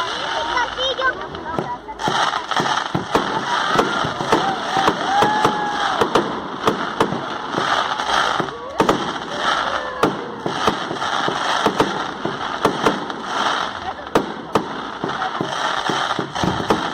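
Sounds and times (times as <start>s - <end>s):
fireworks hissing: 0.0s - 16.9s
fireworks popping and cracking: 0.0s - 16.9s
firework whistles: 2.0s - 13.8s.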